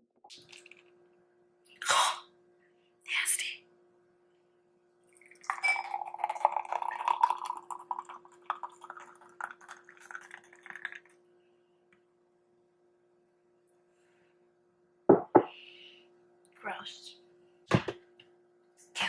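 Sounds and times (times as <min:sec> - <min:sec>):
liquid sounds: 0:05.1 - 0:11.2.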